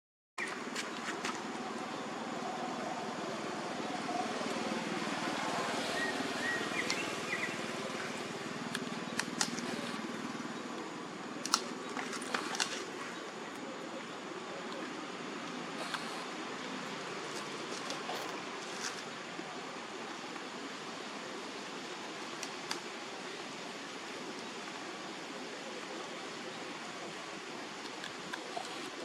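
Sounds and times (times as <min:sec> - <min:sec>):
steady background hiss: 0:00.4 - 0:29.0
sharp clicks: 0:11.4 - 0:12.8.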